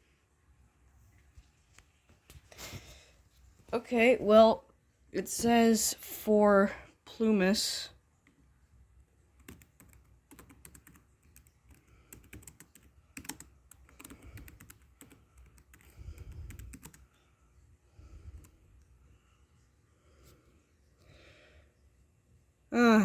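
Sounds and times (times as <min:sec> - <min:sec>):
keyboard typing clicks: 0:09.4 - 0:17.0.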